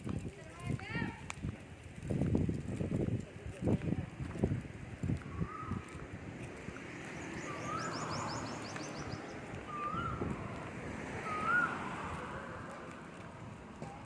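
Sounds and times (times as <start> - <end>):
low outdoor background noise: 0.0 - 14.0
bird whistled call: 5.3 - 5.9, 7.2 - 10.2, 11.2 - 11.8.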